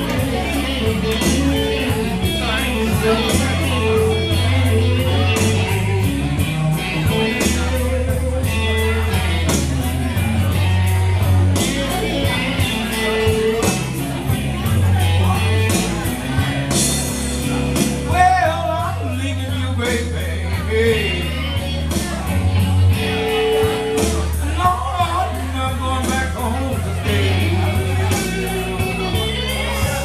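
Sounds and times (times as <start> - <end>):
drums with cymbal hits: 0.0 - 18.9, 20.9 - 30.0
bass notes: 0.0 - 30.0
electric guitar: 0.0 - 30.0
person singing: 0.0 - 30.0.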